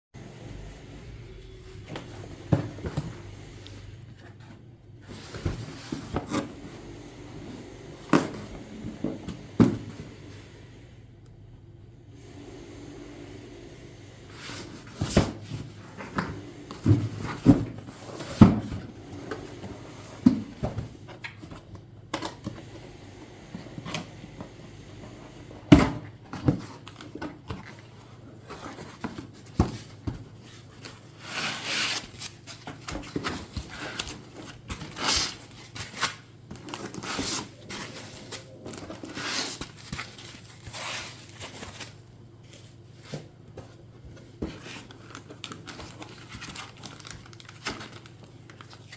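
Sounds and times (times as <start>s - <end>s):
packing material rustling and tearing: 26.7s - 42.1s, 44.4s - 48.9s.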